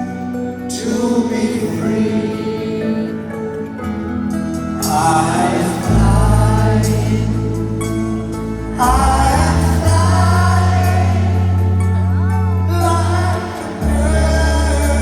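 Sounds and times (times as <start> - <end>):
live band playing rock ballad: 0.0 - 15.0
person singing: 0.6 - 4.0, 4.8 - 8.2, 8.8 - 15.0
held bass notes: 3.4 - 15.0.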